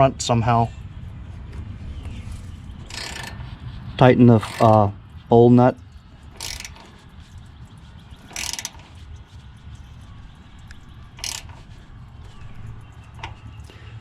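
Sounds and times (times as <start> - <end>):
ratchet wrench clicking: 2.8 - 4.9, 6.2 - 7.1, 7.7 - 9.0, 10.5 - 13.5
small tool ticks: 2.9 - 3.4, 4.4 - 4.8, 6.4 - 6.9, 8.3 - 8.9, 10.7 - 11.6.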